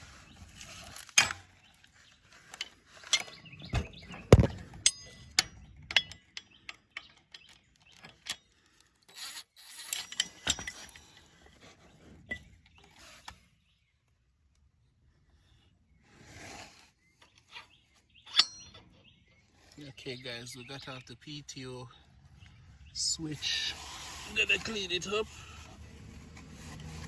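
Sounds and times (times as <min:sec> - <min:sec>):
wrench clinking on metal: 0:04.8 - 0:08.5, 0:18.3 - 0:18.9.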